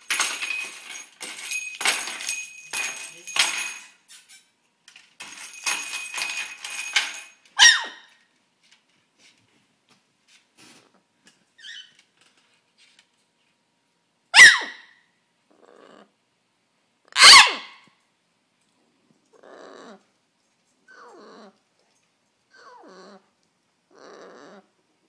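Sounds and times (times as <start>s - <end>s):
bird grumbling: 15.5s - 16.1s, 19.4s - 20.0s.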